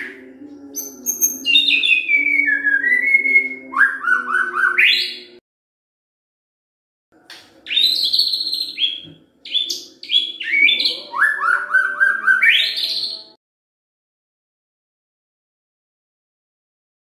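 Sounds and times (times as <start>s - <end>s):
songbird whistling song: 0.0s - 5.4s, 7.7s - 13.4s.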